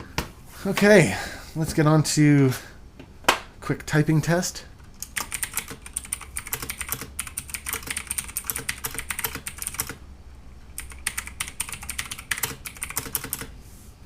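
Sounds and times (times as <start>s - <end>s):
fast typing on mechanical keyboard: 5.0s - 10.0s, 10.7s - 13.5s.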